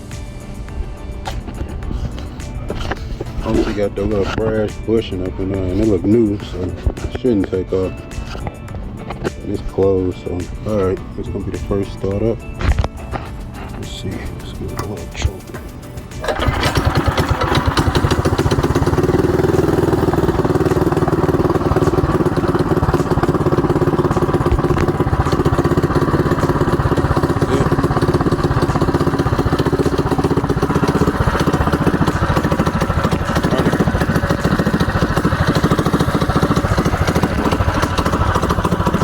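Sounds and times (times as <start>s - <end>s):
mini bike engine running: 1.3s - 6.8s, 16.2s - 39.0s.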